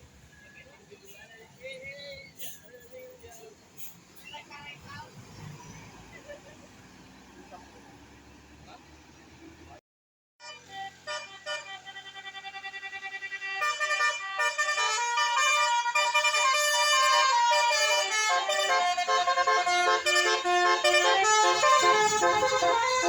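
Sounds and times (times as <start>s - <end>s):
engine and road noise: 0.0s - 9.8s, 10.4s - 23.0s
musical bus air horns: 10.4s - 23.0s.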